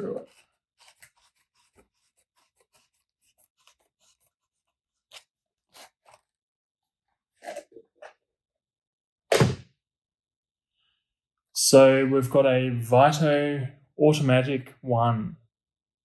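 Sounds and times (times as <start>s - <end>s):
faint scratching and rubbing: 0.0s - 6.4s
loud thump: 9.3s - 9.7s.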